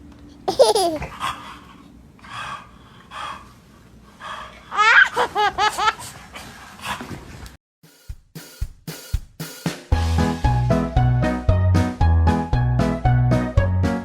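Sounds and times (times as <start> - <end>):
child laughing: 0.5 - 1.2, 4.7 - 6.1.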